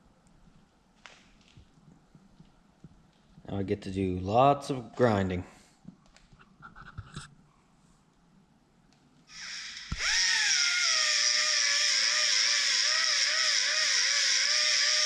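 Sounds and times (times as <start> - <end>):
angle grinder grinding metal: 9.3 - 15.0.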